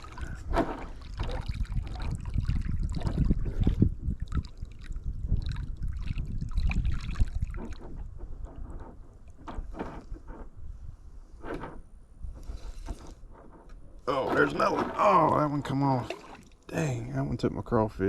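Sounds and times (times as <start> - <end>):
knocks and rustles of kayak gear: 0.0 - 2.0, 7.2 - 10.7, 11.3 - 15.4
creek water trickling: 0.0 - 9.4, 15.0 - 16.9
constant low rumble: 0.0 - 18.0.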